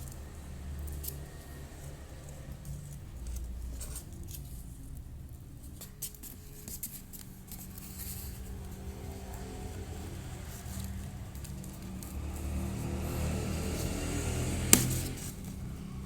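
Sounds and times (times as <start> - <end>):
low steady hum: 0.0 - 16.0
cardboard being cut: 12.9 - 15.5.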